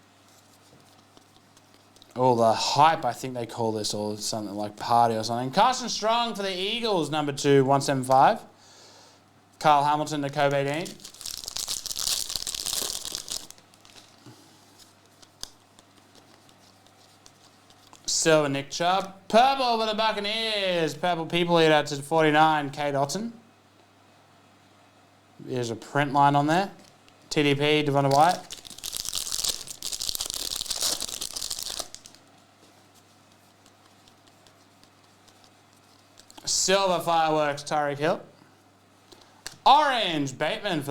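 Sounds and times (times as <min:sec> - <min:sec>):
faint hum: 0:00.0 - 0:40.9
cards being handled: 0:00.2 - 0:02.2, 0:10.6 - 0:18.1, 0:27.9 - 0:36.5
foil wrapper tearing and crinkling: 0:10.7 - 0:18.1, 0:28.0 - 0:32.2.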